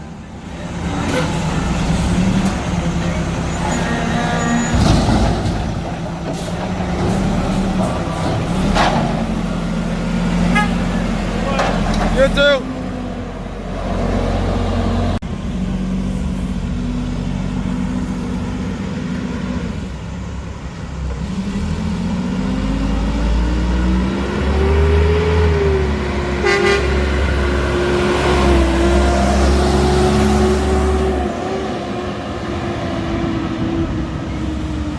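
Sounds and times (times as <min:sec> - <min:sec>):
diesel engine revving: 0:00.0 - 0:34.9
short horn toot: 0:26.4 - 0:27.1.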